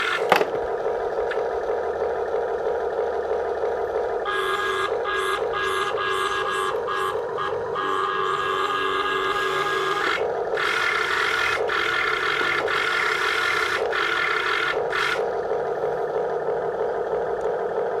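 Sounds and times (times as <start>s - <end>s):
small electric motors whirring: 0.0s - 0.5s, 4.3s - 15.3s
high motor whine: 0.0s - 18.0s.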